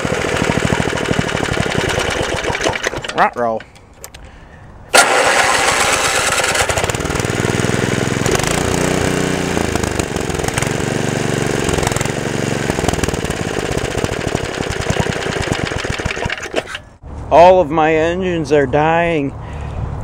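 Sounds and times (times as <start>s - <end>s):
small gasoline engine running: 0.0s - 3.3s, 4.9s - 16.8s.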